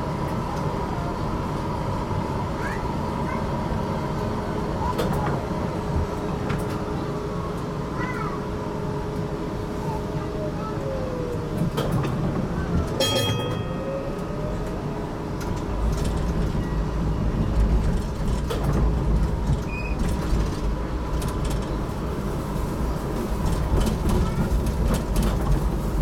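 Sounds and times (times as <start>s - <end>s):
tram rumbling on track: 0.0s - 26.0s
brief ringing tone: 13.0s - 14.5s.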